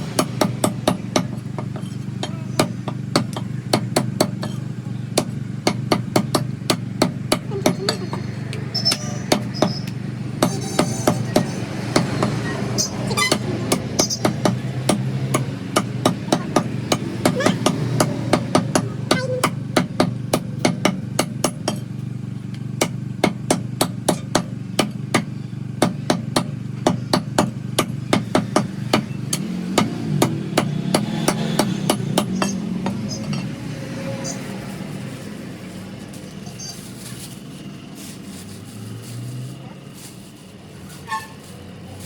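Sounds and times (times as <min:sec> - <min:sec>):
cleaver chopping chicken: 0:13.3 - 0:21.7, 0:22.7 - 0:33.2.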